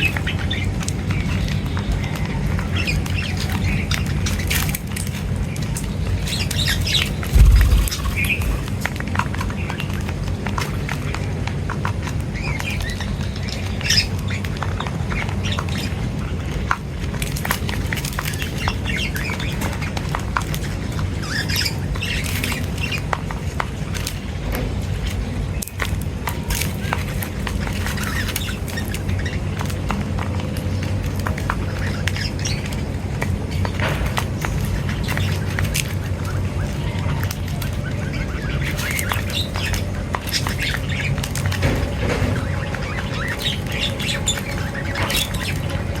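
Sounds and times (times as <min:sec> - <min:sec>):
birds chirping and squawking: 0:00.0 - 0:46.0
steady low rumble: 0:07.1 - 0:09.5
low thump: 0:07.3 - 0:08.9.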